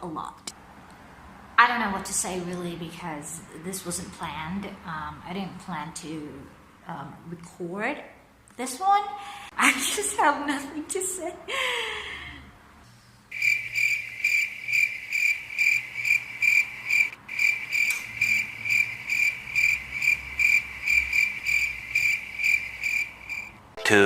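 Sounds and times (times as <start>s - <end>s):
cricket chirping: 13.3s - 23.6s.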